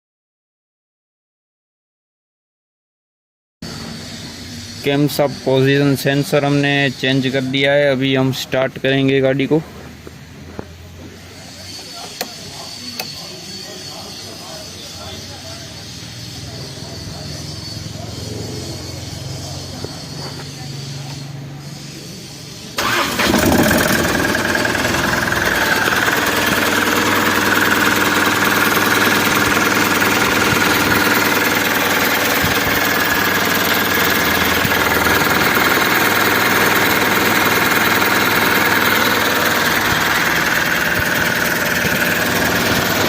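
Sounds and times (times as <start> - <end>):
engine starting and idling: 22.8 - 43.0.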